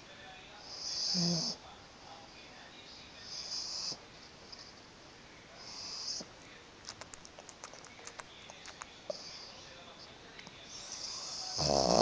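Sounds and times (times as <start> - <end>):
dog snoring: 0.7 - 1.6, 3.2 - 4.0, 5.6 - 6.3, 10.7 - 12.0.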